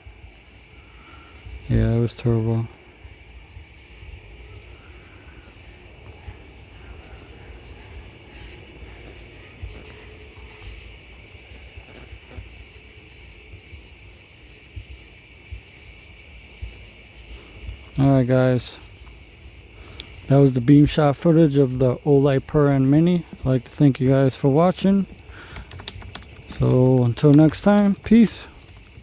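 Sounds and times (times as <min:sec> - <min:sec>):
crickets chirping: 0:00.0 - 0:29.0.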